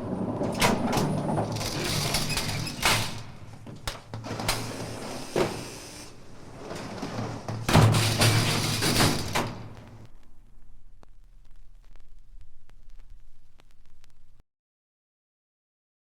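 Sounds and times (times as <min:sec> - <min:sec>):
steady low hum: 0:06.0 - 0:14.4.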